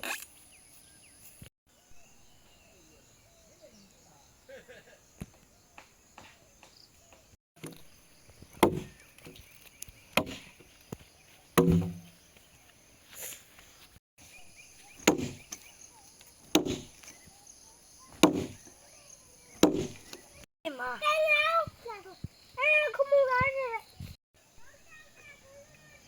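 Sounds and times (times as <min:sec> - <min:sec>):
tool striking wood: 0:08.4 - 0:09.4, 0:10.1 - 0:10.6, 0:11.6 - 0:12.1, 0:15.0 - 0:15.6, 0:16.5 - 0:17.1, 0:18.1 - 0:18.6, 0:19.6 - 0:20.2.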